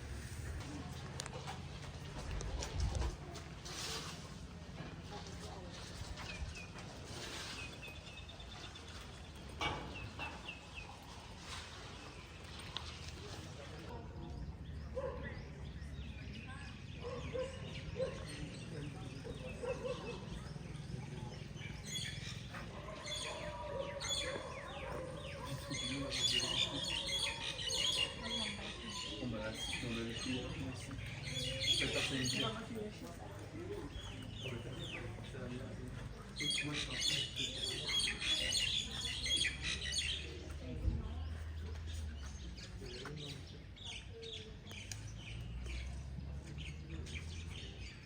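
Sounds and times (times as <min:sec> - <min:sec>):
small birds chirping: 0:06.2 - 0:48.0.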